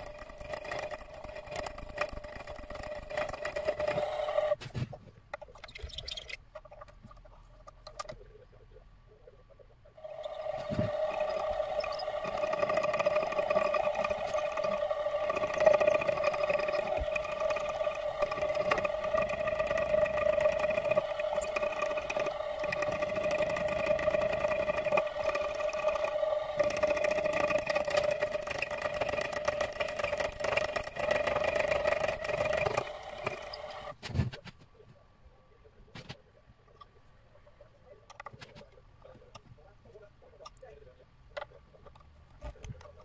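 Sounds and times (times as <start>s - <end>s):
electric milling spindle whine: 0.0s - 4.6s, 10.0s - 34.0s.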